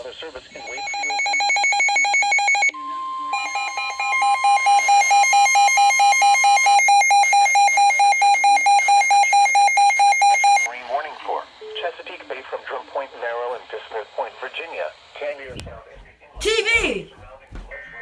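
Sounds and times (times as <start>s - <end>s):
steady alarm tone: 0.6s - 10.7s.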